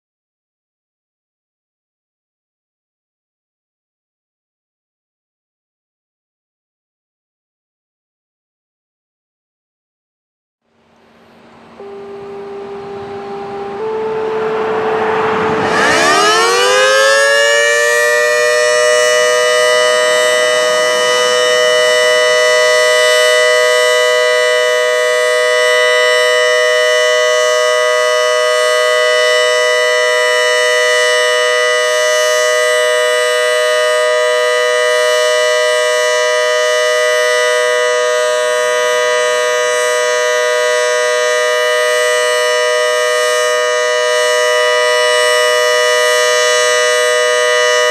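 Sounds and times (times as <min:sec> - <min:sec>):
two-tone warning siren: 0:10.7 - 0:47.9.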